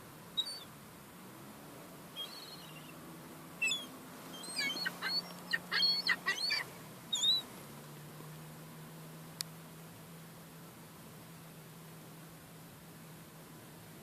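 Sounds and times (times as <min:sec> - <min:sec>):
young gulls squealing: 0:00.4 - 0:00.7, 0:02.2 - 0:03.0, 0:03.6 - 0:07.5.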